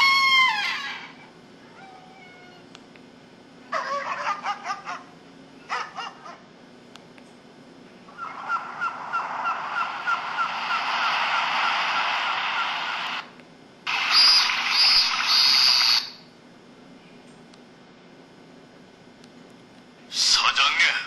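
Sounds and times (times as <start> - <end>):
harsh noise with pulsing high tone: 8.1 - 13.3, 13.9 - 16.2
hissing noise with quick chirps: 13.9 - 16.2.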